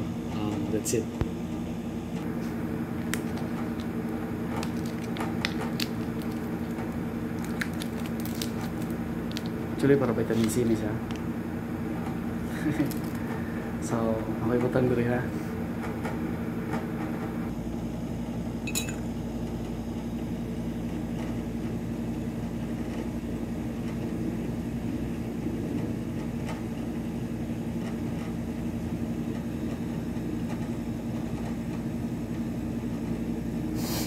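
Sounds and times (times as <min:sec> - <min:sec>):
steady low hum: 0:00.0 - 0:34.0
drinking glass clinking: 0:18.7 - 0:19.0.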